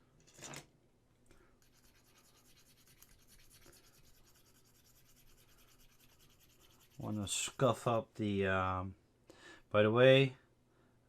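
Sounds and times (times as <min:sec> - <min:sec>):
faint rapid scratching: 0:01.6 - 0:07.9.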